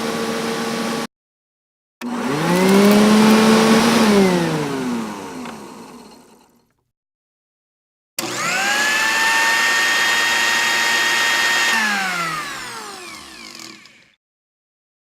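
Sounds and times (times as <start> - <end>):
motor spinning up and down: 2.0 - 6.8, 8.2 - 14.2
steady motor hum: 8.2 - 14.2.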